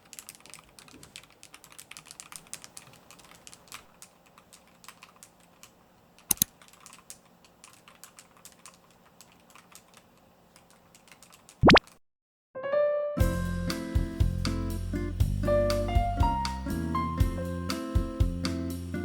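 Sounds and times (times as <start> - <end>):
mechanical keyboard typing: 0.0 - 11.8.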